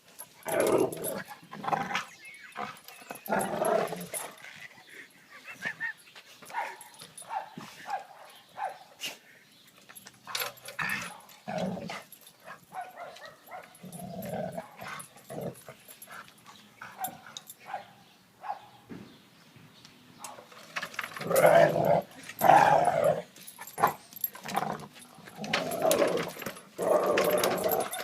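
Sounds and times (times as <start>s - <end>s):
dog barking and growling: 21.2s - 28.0s.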